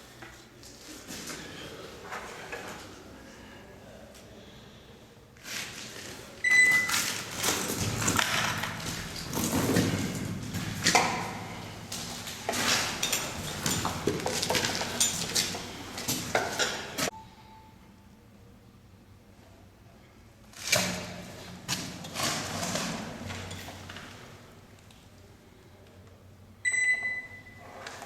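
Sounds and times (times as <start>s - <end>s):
hard objects clattering and scraping: 6.9s - 17.1s.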